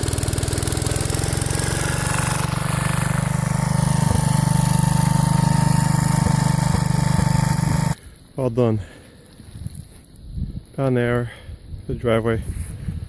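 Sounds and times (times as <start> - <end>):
single-cylinder engine running fast: 0.0 - 8.0
thin steady whine: 1.3 - 8.4.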